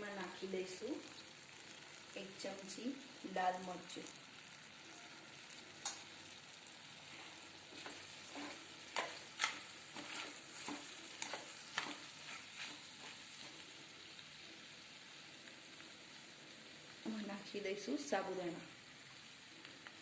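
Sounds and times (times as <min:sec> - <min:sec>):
food sizzling in oil: 0:00.0 - 0:20.0
spoon scraping and clicking on pan: 0:07.8 - 0:13.6.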